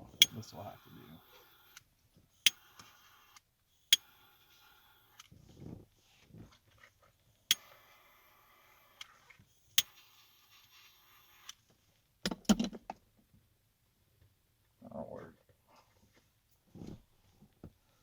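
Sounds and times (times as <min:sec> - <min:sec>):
lighter flame hissing: 0:00.1 - 0:01.8, 0:02.4 - 0:05.3, 0:07.5 - 0:11.6
lighter clicking: 0:02.4 - 0:02.9, 0:03.9 - 0:05.2, 0:07.5 - 0:07.7, 0:09.8 - 0:10.0.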